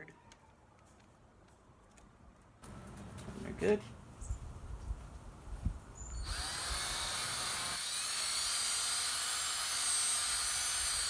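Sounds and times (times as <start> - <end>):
electric drill whining: 6.2 - 11.0.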